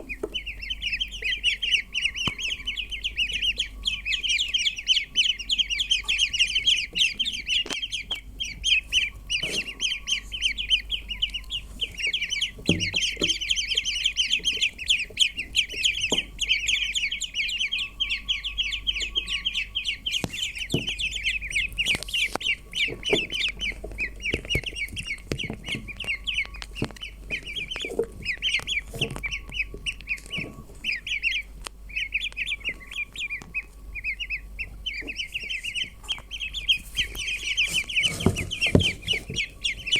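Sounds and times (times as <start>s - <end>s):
ducklings peeping: 0.0s - 39.9s.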